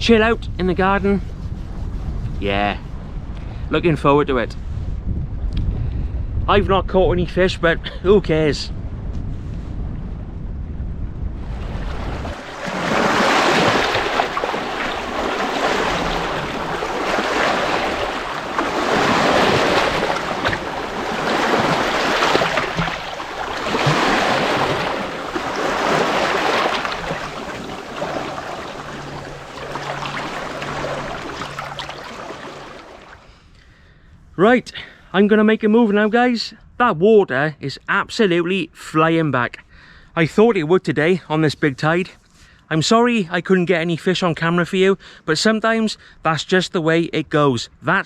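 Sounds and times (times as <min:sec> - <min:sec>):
wind rumble on microphone: 0:00.0 - 0:33.3
small waves washing over shore: 0:11.4 - 0:33.3.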